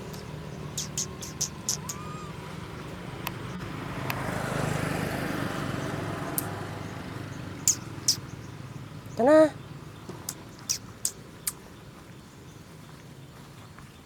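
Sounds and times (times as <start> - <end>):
road vehicle passing by: 0.0 - 14.0
short sharp clicks: 0.8 - 2.0, 7.7 - 8.2.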